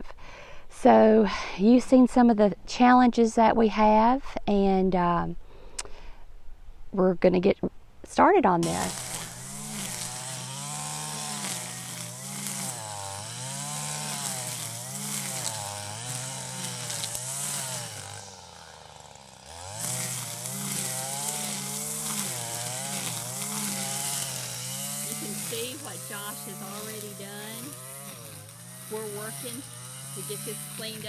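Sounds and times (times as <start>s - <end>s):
small engine running: 8.6s - 31.0s.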